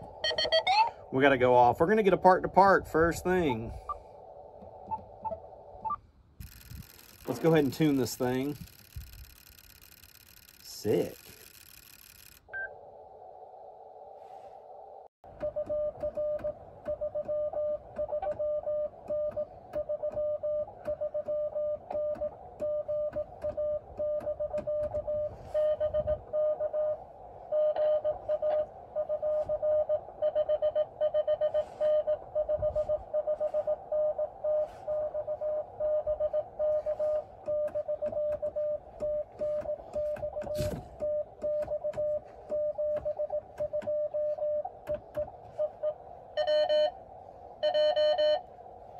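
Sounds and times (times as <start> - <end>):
morse code beeps: 0.2 - 1.0, 4.9 - 12.7, 15.4 - 47.0, 47.6 - 48.5
radio hiss: 6.4 - 9.0, 10.5 - 11.8.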